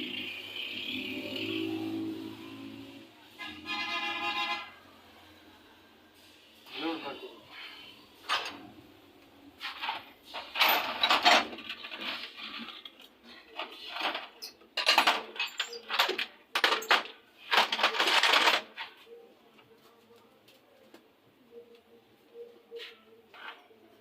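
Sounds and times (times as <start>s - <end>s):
metal tools clinking: 9.6s - 18.8s.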